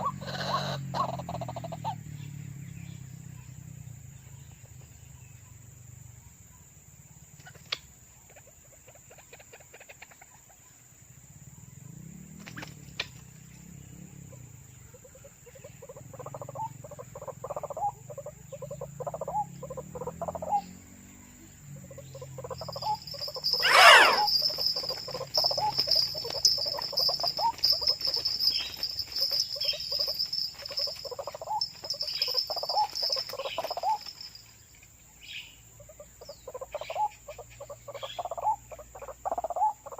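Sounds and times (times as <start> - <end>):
high insect buzz: 22.0 - 34.6
waterhens croaking: 22.2 - 34.1.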